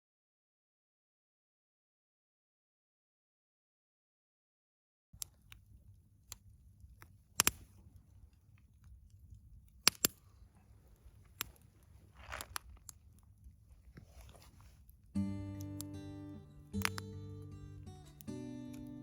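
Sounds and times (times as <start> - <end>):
campfire crackling: 15.2 - 19.0.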